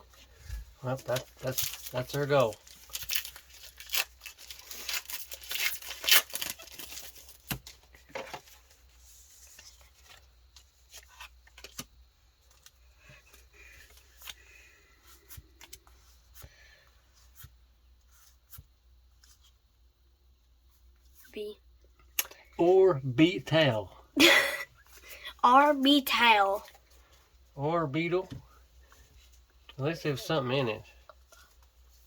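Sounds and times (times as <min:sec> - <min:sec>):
cards rustling and clicking: 0:01.0 - 0:14.5
foil wrapper tearing: 0:01.4 - 0:07.6.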